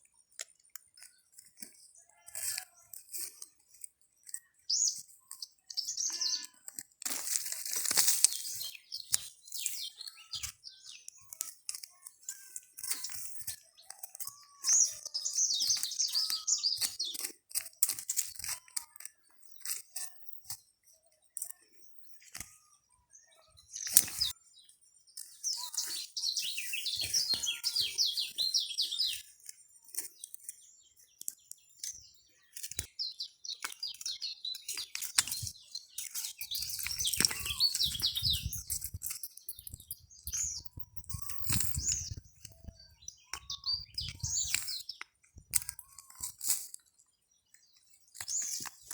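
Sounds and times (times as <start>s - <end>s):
small bird chirping: 0.0s - 48.9s
crackles and rustles: 6.3s - 9.7s, 33.6s - 43.5s, 44.2s - 47.0s.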